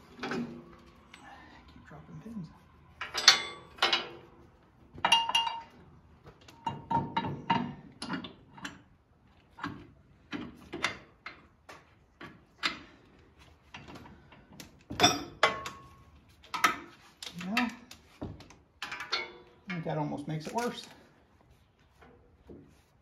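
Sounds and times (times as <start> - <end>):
steel parts and tools clinking: 3.0 - 4.3, 5.0 - 5.8, 18.8 - 20.9.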